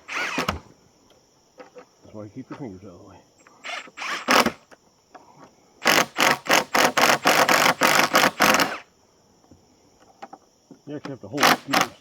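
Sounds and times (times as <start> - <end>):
power driver sinking screws: 0.0 - 0.7, 3.6 - 4.7, 5.8 - 8.8, 11.4 - 12.0.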